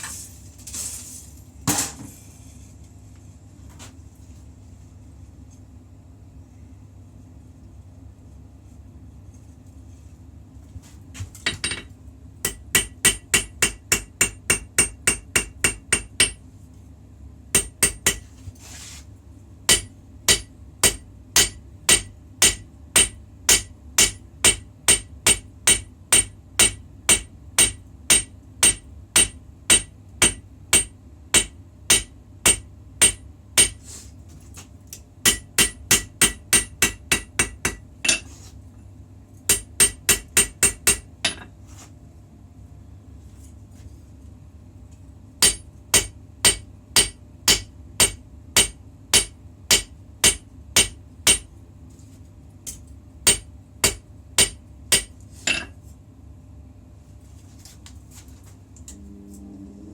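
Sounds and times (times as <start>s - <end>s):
hammer striking steel: 12.5s - 16.4s, 17.6s - 18.2s, 19.7s - 33.8s, 35.2s - 38.2s, 39.5s - 41.5s, 45.4s - 51.5s, 53.2s - 55.7s.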